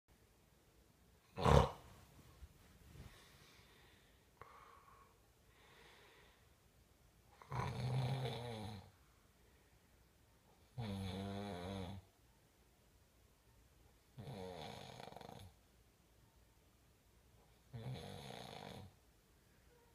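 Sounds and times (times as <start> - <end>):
loud snoring: 1.3 - 1.8, 7.4 - 8.9, 10.8 - 12.0, 14.2 - 15.5, 17.7 - 19.0
faint breaths: 2.3 - 6.7, 8.8 - 10.2.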